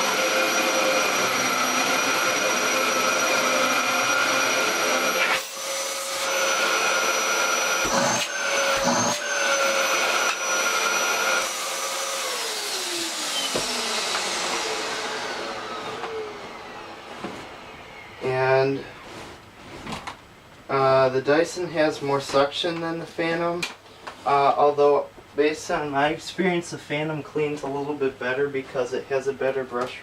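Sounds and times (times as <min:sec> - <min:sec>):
vacuum cleaner motor whine: 0:00.0 - 0:19.3.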